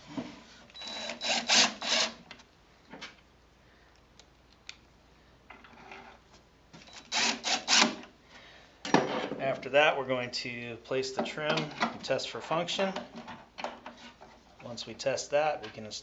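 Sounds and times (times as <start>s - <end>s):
driver turning screws: 0.8s - 2.2s, 6.9s - 8.1s.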